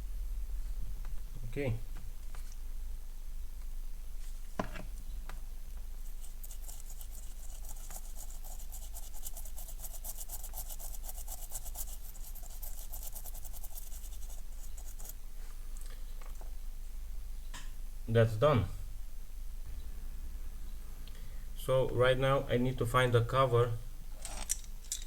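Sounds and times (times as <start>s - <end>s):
mains hum: 0.0s - 25.0s
scratching and rubbing on hard object: 6.0s - 15.2s.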